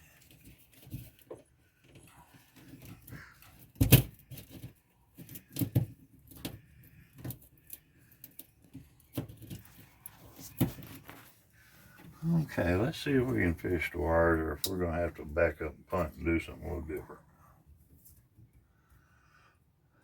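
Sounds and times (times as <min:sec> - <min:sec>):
hands handling tools and wiring: 0:00.0 - 0:12.2.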